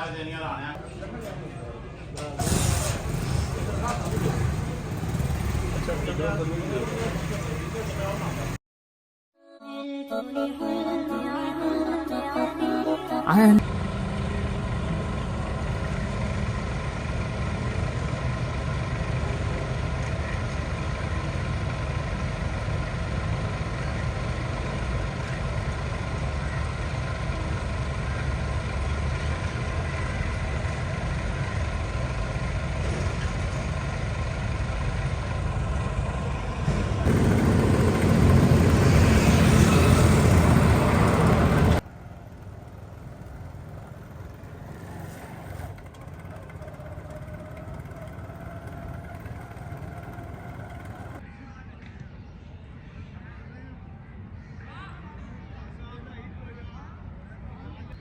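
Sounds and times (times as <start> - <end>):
engine low rumble: 0.0 - 8.6, 13.6 - 51.2.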